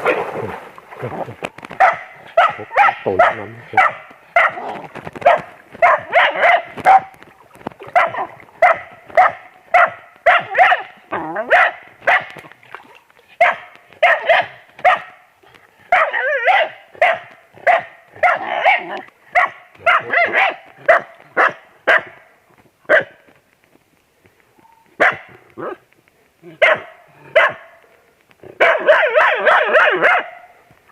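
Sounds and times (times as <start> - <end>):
dog barking: 1.8 - 7.1, 7.9 - 12.4, 13.4 - 15.2, 15.9 - 22.2, 22.9 - 23.2, 25.0 - 25.8, 26.5 - 27.8, 28.5 - 30.6.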